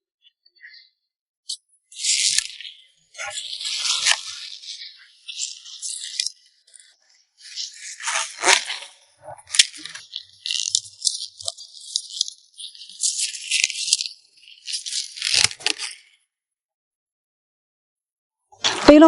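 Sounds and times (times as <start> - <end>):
leafy greens rustling and crunching: 2.0 - 16.0.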